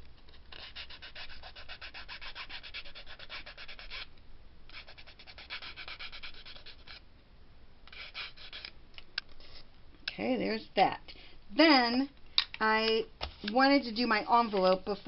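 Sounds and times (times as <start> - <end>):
ink pad rubbing on paper edge: 0.6 - 4.1, 4.7 - 7.0.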